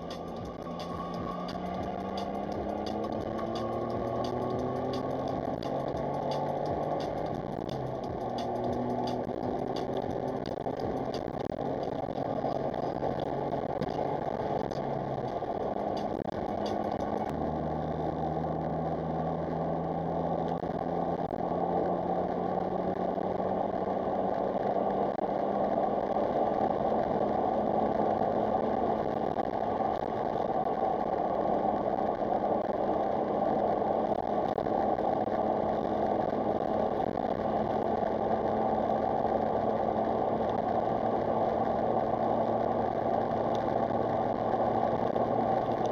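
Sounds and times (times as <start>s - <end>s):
car engine running: 0.0s - 45.9s
road and cabin noise: 0.0s - 45.9s.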